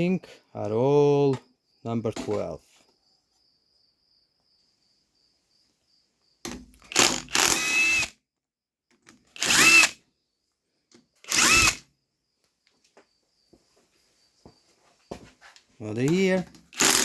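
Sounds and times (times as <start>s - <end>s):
electric power driver whining: 6.9s - 8.1s, 9.4s - 10.0s, 11.3s - 11.8s, 16.8s - 17.0s.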